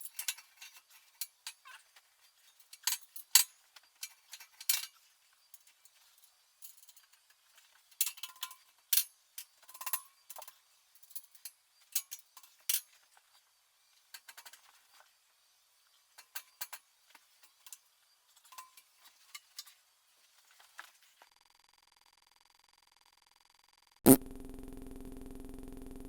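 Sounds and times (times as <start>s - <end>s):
steady electrical hum: 24.1s - 26.0s.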